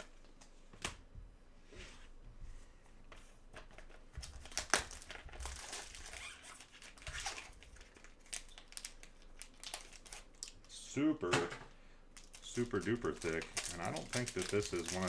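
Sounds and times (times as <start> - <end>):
plastic wrapping crinkling: 3.7 - 11.4, 12.1 - 15.0.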